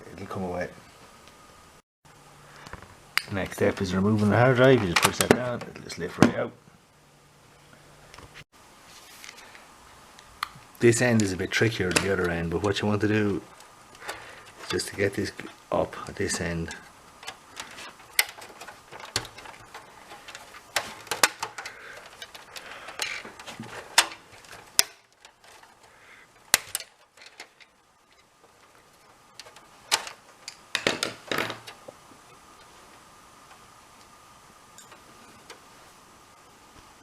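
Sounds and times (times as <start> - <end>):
plastic casing being pried: 17.2 - 27.6.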